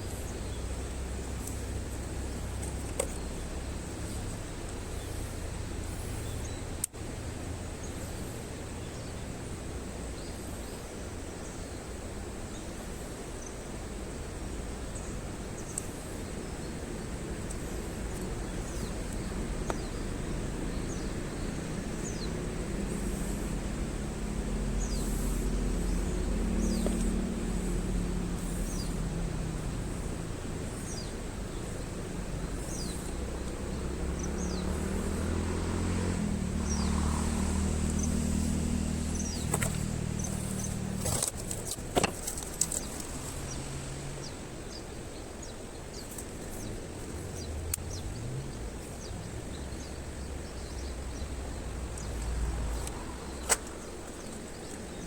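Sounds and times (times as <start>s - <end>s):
low hum: 13.8s - 44.8s
bird chirps: 17.5s - 55.0s.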